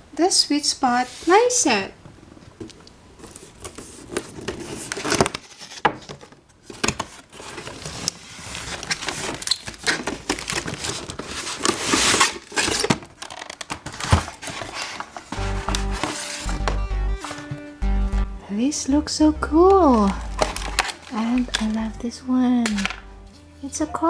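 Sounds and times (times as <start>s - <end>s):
packaging crinkling and tearing: 3.2s - 16.6s, 20.0s - 21.8s
music: 15.4s - 24.0s.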